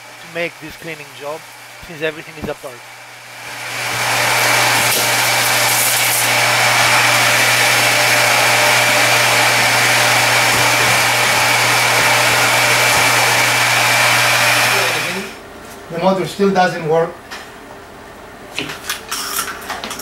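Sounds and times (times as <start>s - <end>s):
vacuum cleaner running: 0.0s - 15.4s.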